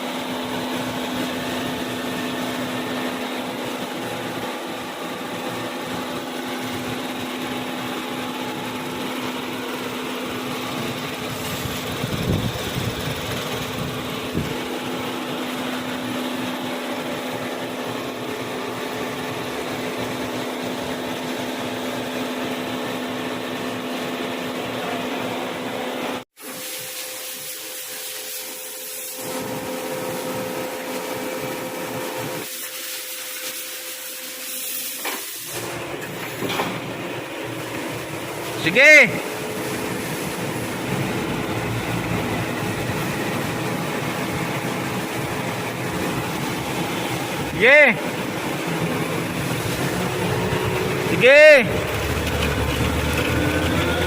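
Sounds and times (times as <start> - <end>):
differential hum: 35.5 - 54.0
car drivetrain and road noise: 49.3 - 54.0.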